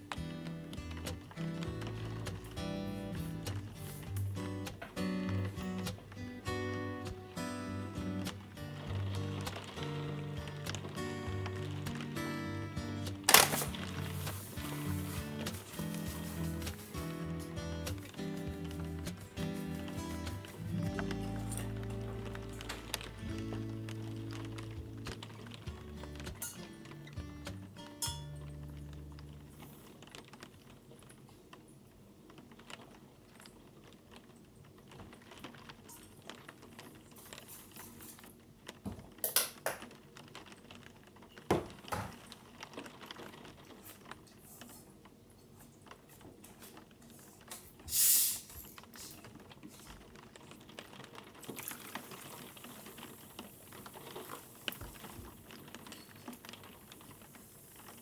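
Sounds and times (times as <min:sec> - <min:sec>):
utensils and dishes clicking: 0:08.1 - 0:30.0
brief loud hiss: 0:47.9 - 0:48.7.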